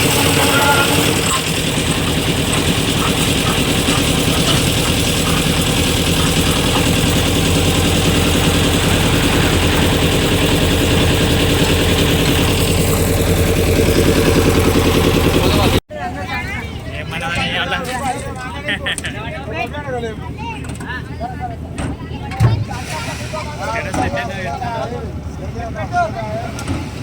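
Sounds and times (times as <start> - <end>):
heavy engine running: 0.0 - 27.0.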